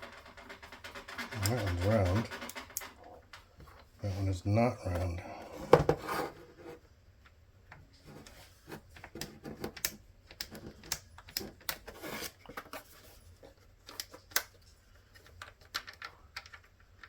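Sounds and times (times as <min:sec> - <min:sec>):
small plastic parts clicking: 0:13.8 - 0:17.0.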